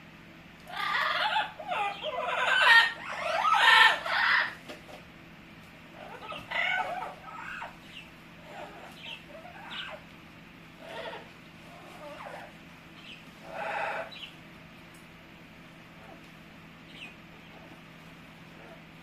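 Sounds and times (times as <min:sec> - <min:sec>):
parrot clucking calls: 0:00.6 - 0:04.7, 0:05.9 - 0:14.4.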